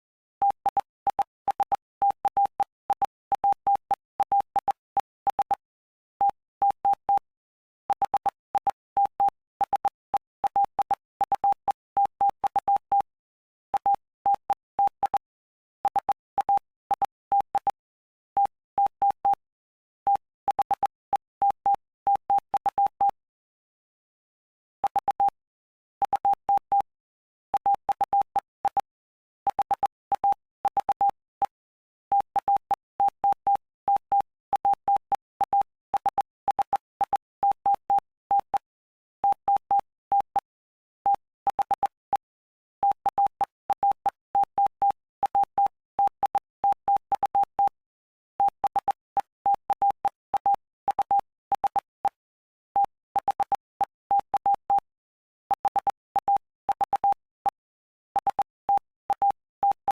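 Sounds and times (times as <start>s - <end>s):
morse code beeps: 7.9s - 13.1s, 13.8s - 17.8s, 20.1s - 23.2s, 27.6s - 28.9s, 29.5s - 40.5s, 41.1s - 47.8s, 48.4s - 52.2s, 52.8s - 54.9s, 55.5s - 57.6s, 58.2s - 59.9s.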